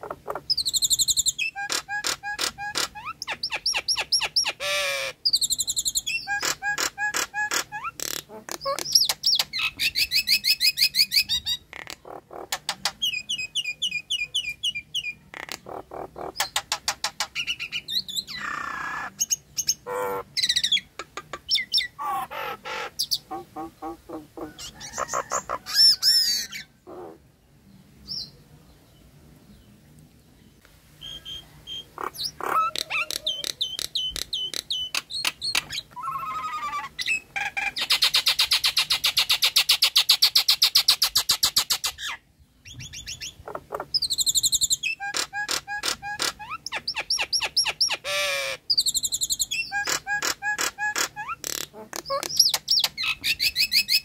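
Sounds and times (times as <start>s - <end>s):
myna whistling and calling: 0.0s - 11.6s, 31.0s - 54.0s.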